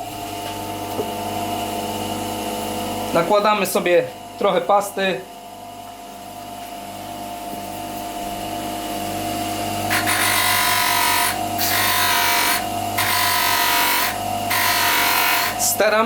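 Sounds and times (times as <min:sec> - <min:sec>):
electric polisher motor: 0:09.9 - 0:15.6.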